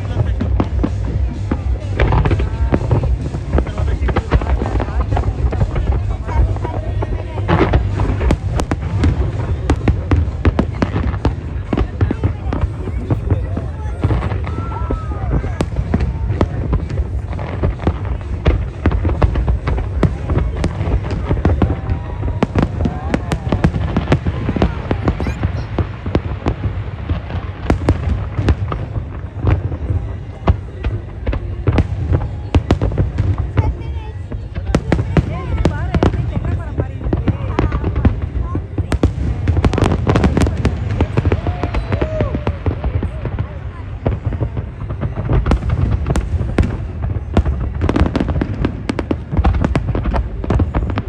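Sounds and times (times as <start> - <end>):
continuous low rumble: 0.0 - 51.0
fireworks bangs: 0.0 - 51.0
fireworks crackling pops: 0.0 - 51.0.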